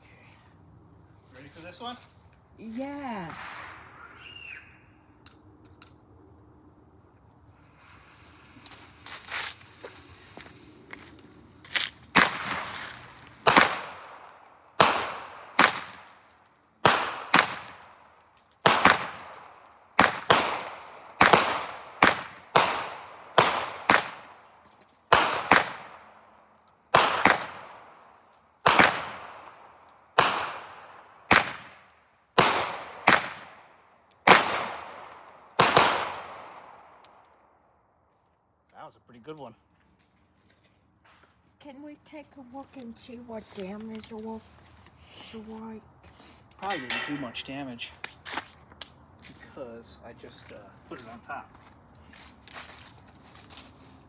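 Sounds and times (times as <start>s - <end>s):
firework bangs: 3.1s - 4.9s, 12.1s - 16.2s, 16.8s - 18.0s, 18.6s - 24.4s, 25.1s - 26.1s, 26.9s - 27.9s, 28.6s - 31.8s, 32.4s - 33.6s, 34.2s - 36.9s.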